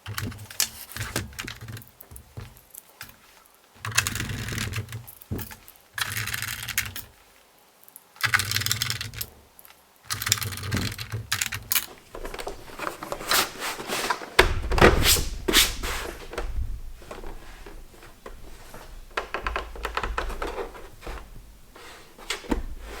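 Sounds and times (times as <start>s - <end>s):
sharp clicks and knocks: 11.3s - 23.0s
heavy thud: 14.4s - 19.2s.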